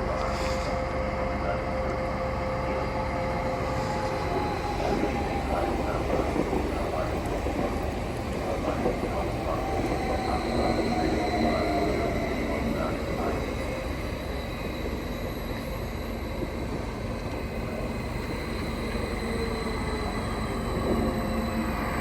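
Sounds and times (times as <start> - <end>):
train rolling rumble: 0.0 - 22.0.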